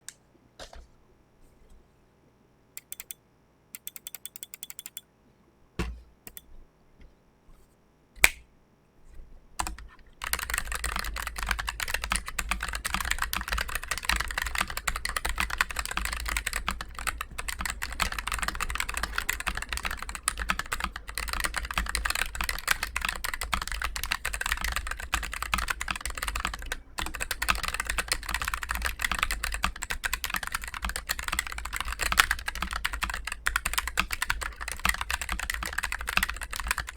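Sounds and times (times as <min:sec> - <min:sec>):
mechanical keyboard typing: 0:02.8 - 0:03.2, 0:03.8 - 0:05.0, 0:06.3 - 0:06.5, 0:09.6 - 0:36.9.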